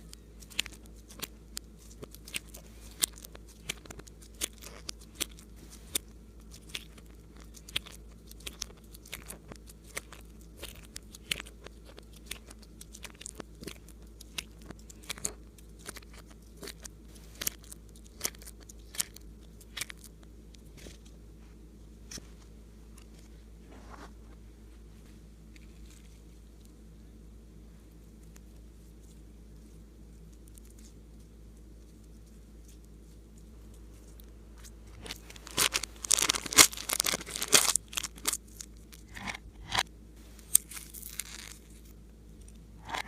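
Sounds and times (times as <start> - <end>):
slime crackling and popping: 0.0 - 21.1, 34.0 - 39.8, 40.4 - 43.0.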